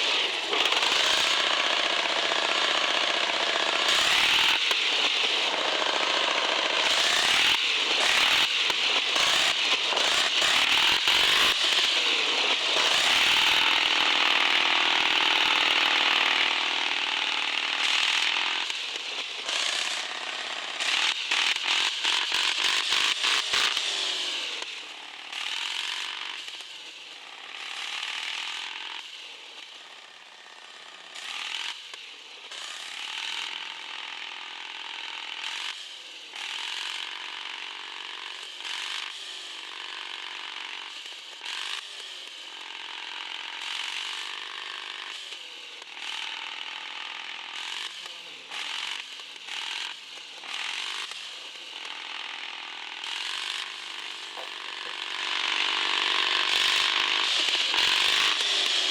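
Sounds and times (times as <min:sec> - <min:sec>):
electric motor whining: 0:53.5 - 0:58.9.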